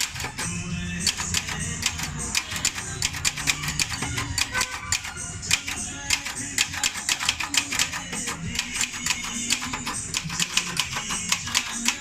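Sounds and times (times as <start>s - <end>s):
typewriter clacking: 0.0s - 12.0s.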